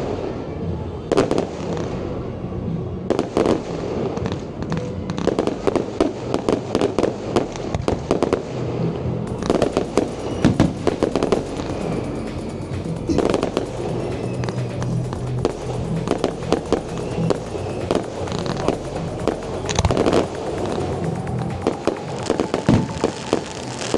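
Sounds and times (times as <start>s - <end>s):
music playing: 0.0s - 23.9s
fireworks bangs and crackling: 9.3s - 23.9s.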